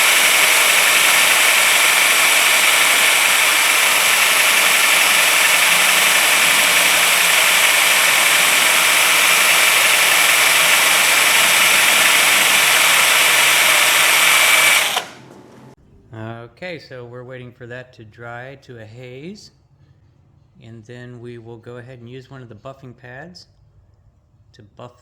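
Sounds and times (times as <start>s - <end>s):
power drill polishing: 0.0s - 15.4s.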